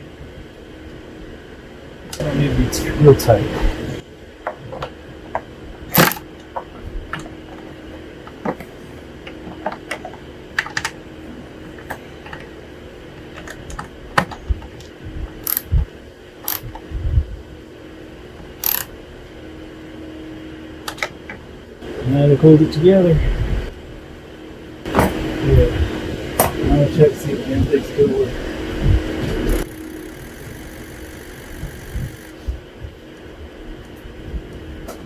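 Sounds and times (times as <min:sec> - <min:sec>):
faint steady hum: 0:00.0 - 0:35.0
socket wrench clicking: 0:05.9 - 0:06.2, 0:15.4 - 0:15.8, 0:16.5 - 0:16.7, 0:18.6 - 0:18.9.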